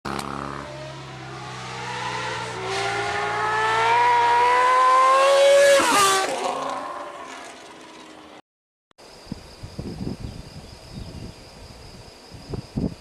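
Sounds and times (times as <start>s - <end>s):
motorcycle engine accelerating past: 0.1s - 8.4s.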